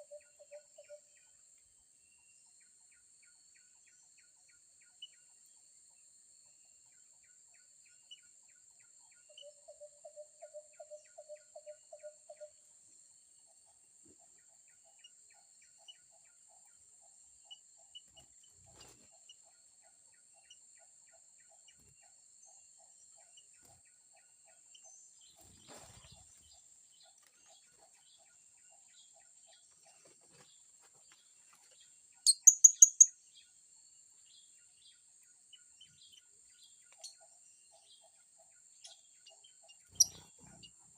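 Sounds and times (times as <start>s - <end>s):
sharp high-pitched bird calls: 32.2s - 33.1s, 38.8s - 40.8s.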